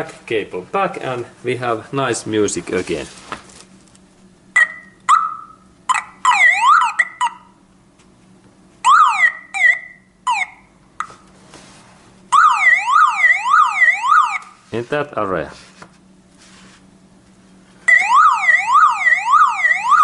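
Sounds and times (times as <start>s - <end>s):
car alarm siren: 4.6s - 7.6s, 8.8s - 10.7s, 12.3s - 14.6s, 17.9s - 20.0s.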